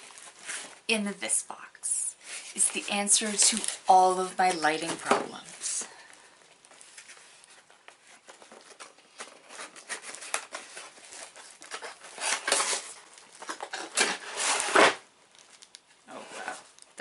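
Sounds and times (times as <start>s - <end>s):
cardboard scraping and rustling: 6.7s - 15.1s
tape tearing: 8.2s - 15.8s.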